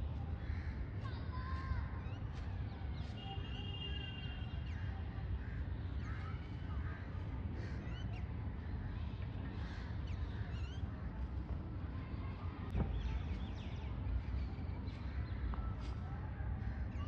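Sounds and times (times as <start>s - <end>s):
many birds chirping: 0.1s - 11.2s.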